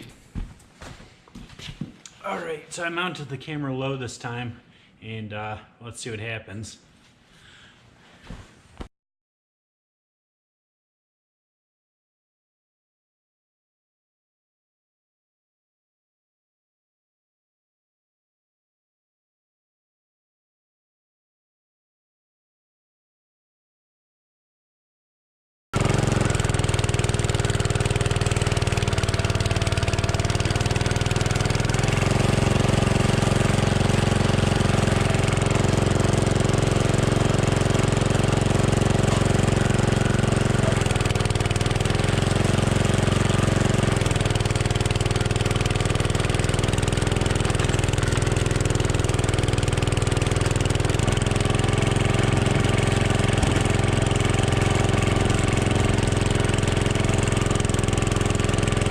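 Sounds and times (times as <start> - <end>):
garden tractor engine under load: 25.8 - 58.9.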